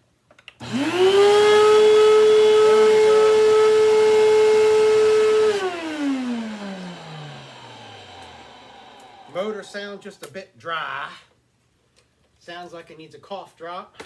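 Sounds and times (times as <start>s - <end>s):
vacuum cleaner motor whine: 0.6s - 10.0s.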